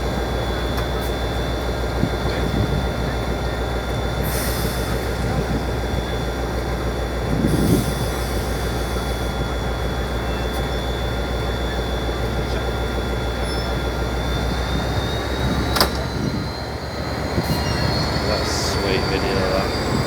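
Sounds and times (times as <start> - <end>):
diesel locomotive engine rumble: 0.0 - 20.0
high turbocharger whistle: 7.7 - 20.0.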